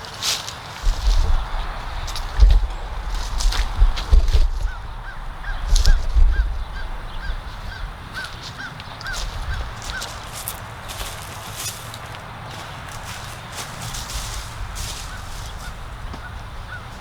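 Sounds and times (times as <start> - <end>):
thumps: 0.8 - 8.1
low rumbling: 0.8 - 11.1, 13.9 - 17.0
bird calling: 0.8 - 17.0.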